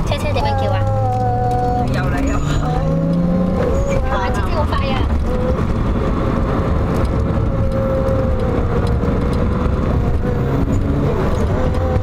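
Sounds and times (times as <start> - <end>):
boy imitating car engine: 0.0 - 5.9.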